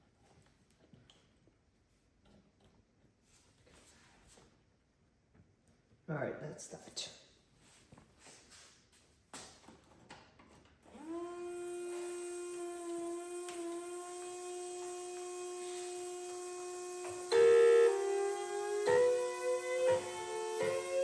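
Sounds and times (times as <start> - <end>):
siren: 17.3 - 21.0.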